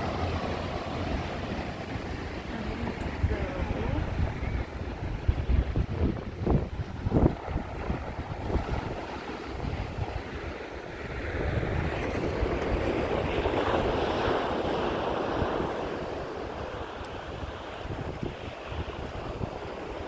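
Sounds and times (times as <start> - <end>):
ocean wave breaking: 0.0 - 20.0
wind buffeting microphone: 0.0 - 20.0.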